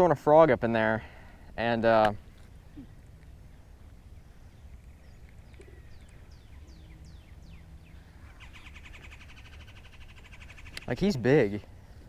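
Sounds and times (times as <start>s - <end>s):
buzzy bird chatter: 2.6s - 11.7s.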